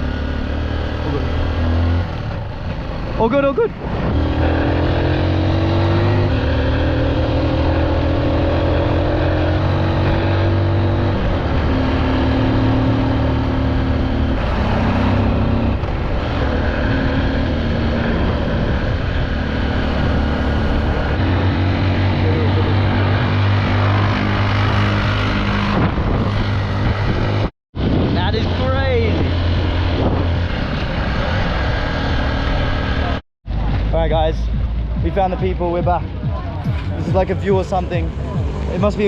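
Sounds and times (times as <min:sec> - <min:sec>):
dirt bike engine running: 0:09.5 - 0:28.0
steady rushing noise: 0:09.6 - 0:39.0.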